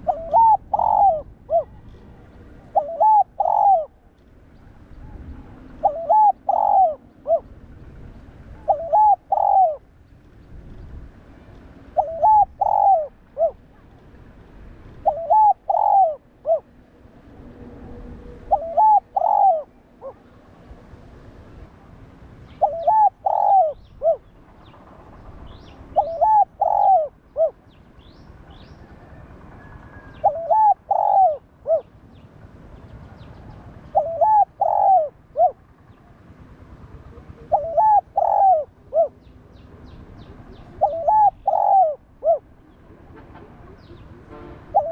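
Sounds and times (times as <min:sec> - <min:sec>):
dove cooing: 0:00.0 - 0:04.0, 0:05.0 - 0:07.6, 0:08.5 - 0:09.9, 0:11.9 - 0:13.8, 0:15.0 - 0:16.8, 0:18.4 - 0:20.3, 0:22.6 - 0:24.4, 0:25.8 - 0:27.6, 0:28.5 - 0:32.0, 0:33.3 - 0:36.2, 0:36.9 - 0:39.3, 0:40.1 - 0:42.6.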